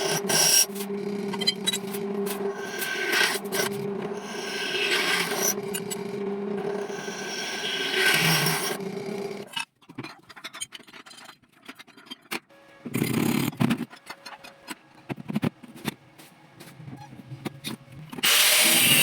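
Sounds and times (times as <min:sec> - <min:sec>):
hand tool scraping: 0:00.0 - 0:09.4.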